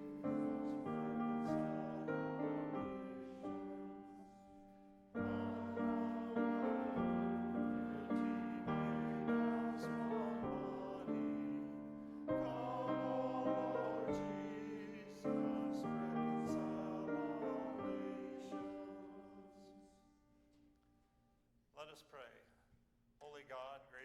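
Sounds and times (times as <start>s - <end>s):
church keyboard playing held chords: 0.0s - 20.0s.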